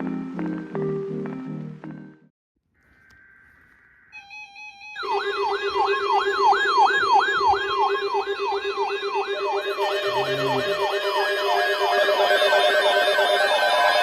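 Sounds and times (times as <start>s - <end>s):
electronic siren yelp: 2.8s - 14.0s
steady electronic tones: 2.9s - 14.0s.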